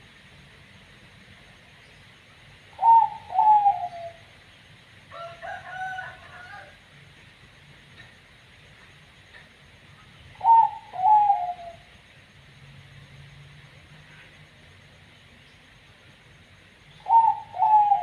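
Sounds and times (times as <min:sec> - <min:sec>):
dove cooing: 0:02.8 - 0:04.3, 0:10.4 - 0:11.9, 0:17.0 - 0:18.0.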